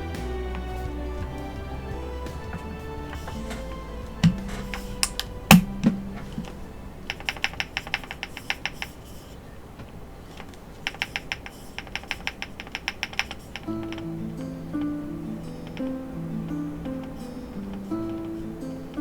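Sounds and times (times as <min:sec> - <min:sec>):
background music: 0:00.0 - 0:08.2, 0:13.7 - 0:19.0.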